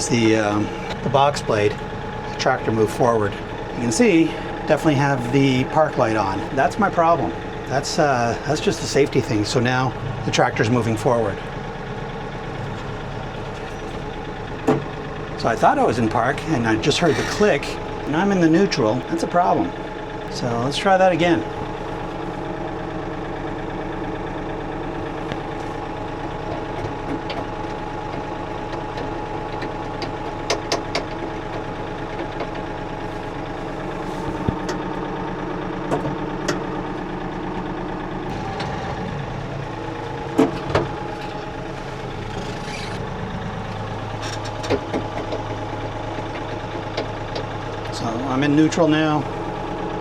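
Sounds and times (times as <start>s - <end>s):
diesel tractor engine idling: 0.0s - 50.0s
sharp clicks and clunks: 26.5s - 32.6s, 44.2s - 45.5s.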